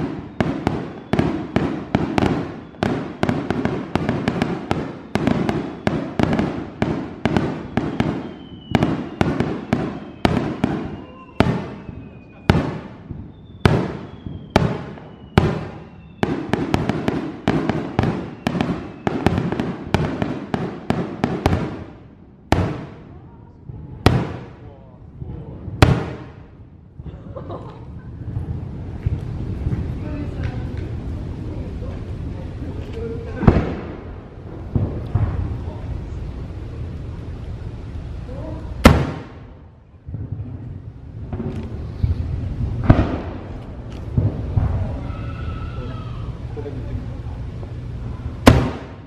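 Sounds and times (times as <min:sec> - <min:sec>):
faint falling whistles: 0:00.2 - 0:01.5, 0:07.5 - 0:16.3.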